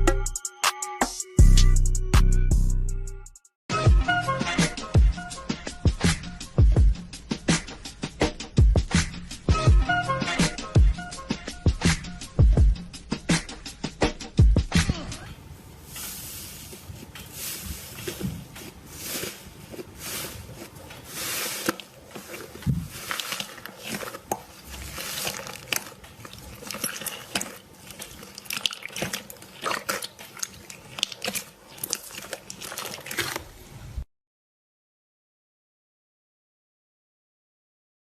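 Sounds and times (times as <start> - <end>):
slime squelching by hand: 15.9 - 33.8.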